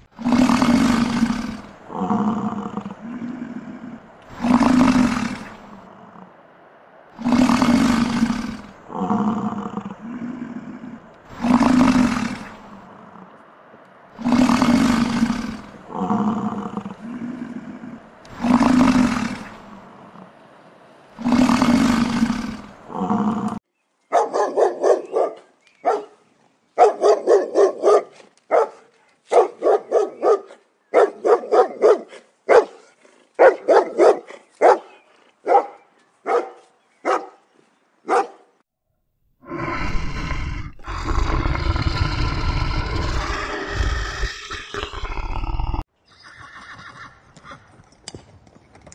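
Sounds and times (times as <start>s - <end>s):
loud roar: 0.1s - 20.5s, 21.1s - 23.6s, 39.4s - 45.9s
harsh animal sound with low rumble: 0.1s - 23.6s, 39.4s - 45.9s
dog barking: 24.1s - 26.2s, 26.8s - 37.4s, 38.0s - 38.5s.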